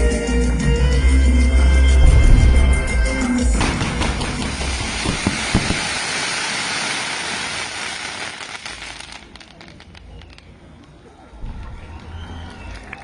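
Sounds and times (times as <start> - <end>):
fireworks hissing and crackling: 3.6 - 11.1.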